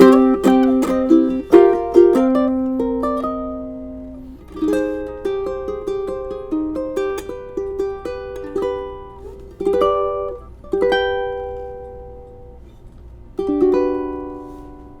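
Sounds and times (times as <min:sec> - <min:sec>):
ukulele plucked notes: 0:00.0 - 0:12.7, 0:13.4 - 0:15.0
ukulele strummed chords: 0:00.0 - 0:12.7, 0:13.3 - 0:15.0.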